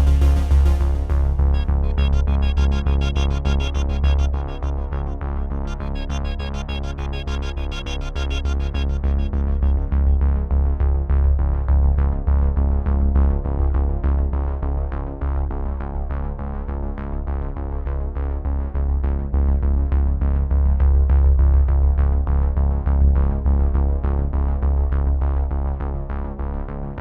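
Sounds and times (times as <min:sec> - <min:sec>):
instrumental music with strong bass: 0:00.0 - 0:14.8.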